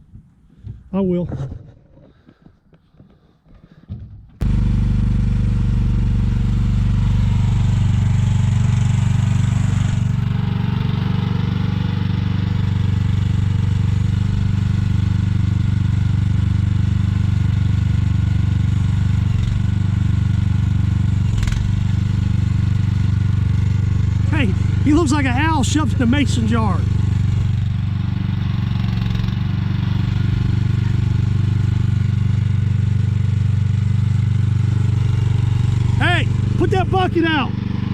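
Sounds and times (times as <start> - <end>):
excavator engine running: 4.4 - 14.6, 21.2 - 37.9.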